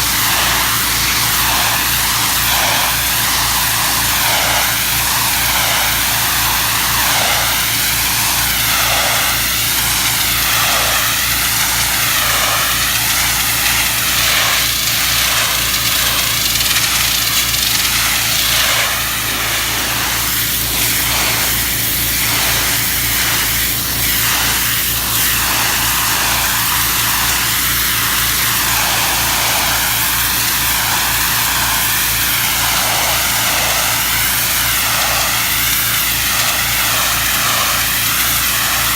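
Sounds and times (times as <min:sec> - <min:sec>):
engine drone: 0:00.0 - 0:24.6
water spray hissing: 0:00.0 - 0:38.9.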